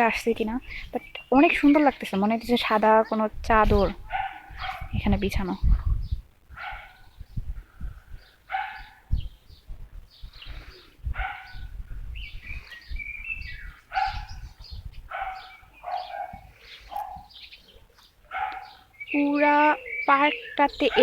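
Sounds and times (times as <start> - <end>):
birds chirping: 0.0 - 21.0
dog barking: 4.0 - 5.0, 6.6 - 7.2, 8.5 - 9.2, 11.1 - 11.7, 13.9 - 14.5, 15.1 - 17.3, 18.3 - 18.9.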